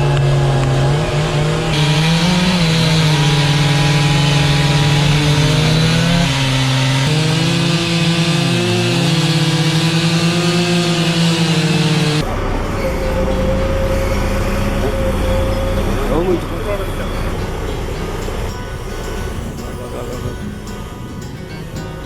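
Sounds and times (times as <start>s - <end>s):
chainsaw cutting log: 0.0s - 13.0s.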